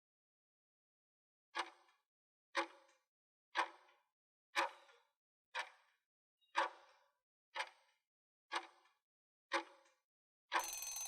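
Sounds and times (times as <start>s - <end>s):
clock ticks with ringing tail: 10.5s - 11.0s.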